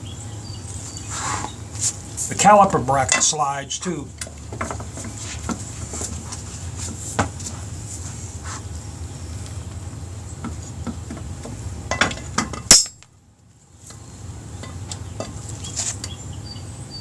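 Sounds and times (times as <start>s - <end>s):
metal tools clinking and knocking: 11.9s - 13.0s.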